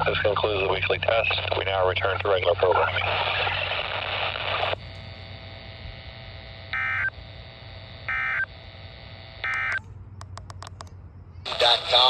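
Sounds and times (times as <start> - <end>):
faint steady tones: 1.4 - 12.0
steady hum: 3.6 - 11.9
bursts of data tones: 9.4 - 10.9.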